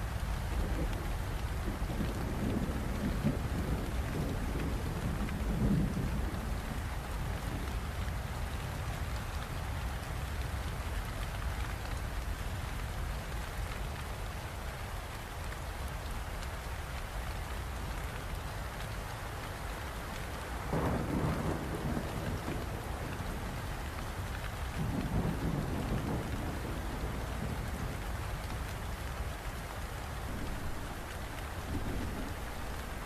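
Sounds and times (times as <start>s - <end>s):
low rumble of thunder: 0.0s - 9.6s, 20.4s - 33.0s
steady rain falling: 0.0s - 33.0s.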